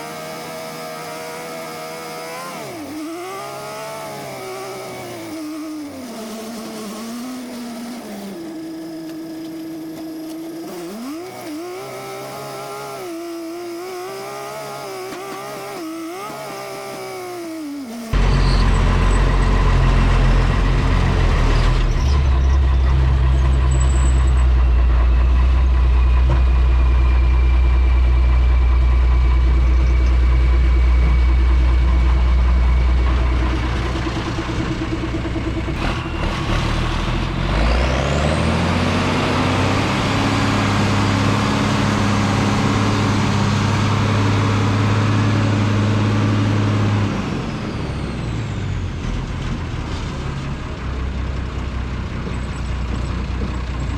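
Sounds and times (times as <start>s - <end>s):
diesel truck engine running: 17.8s - 53.9s.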